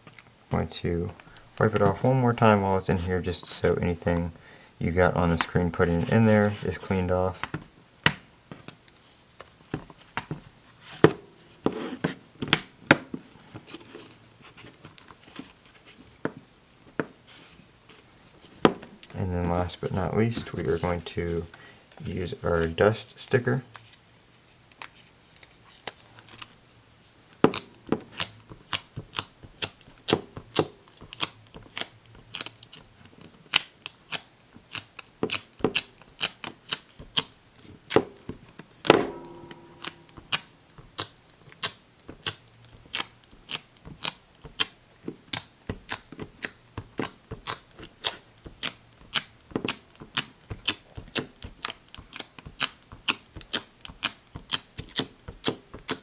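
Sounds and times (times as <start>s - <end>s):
knock with brief ring: 38.9s - 40.3s.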